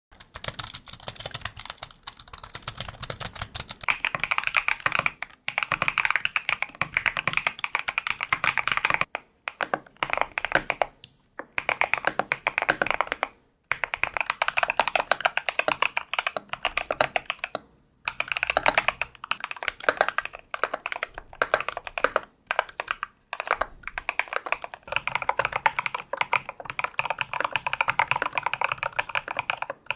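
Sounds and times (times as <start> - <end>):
fast typing on mechanical keyboard: 0.1 - 10.9, 11.6 - 29.9.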